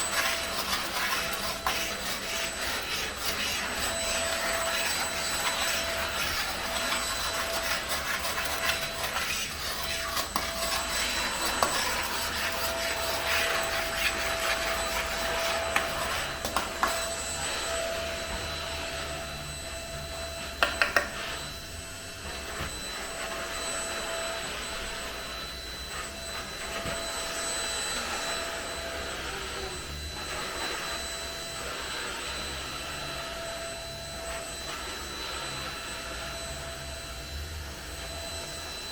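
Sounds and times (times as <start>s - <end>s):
scrubbing and rubbing: 0.0s - 17.6s
small electric motor whining: 0.0s - 38.9s.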